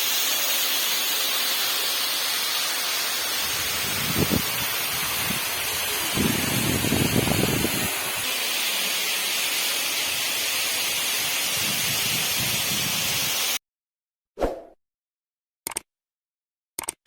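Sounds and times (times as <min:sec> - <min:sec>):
waterfall rushing: 0:00.0 - 0:13.6.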